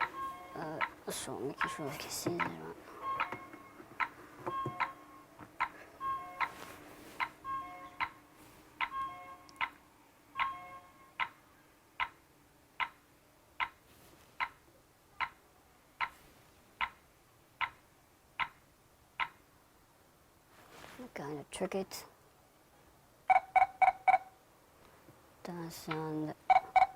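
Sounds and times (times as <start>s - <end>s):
alarm panel electronic ticks: 0.0s - 5.0s, 8.8s - 9.8s, 10.4s - 11.4s.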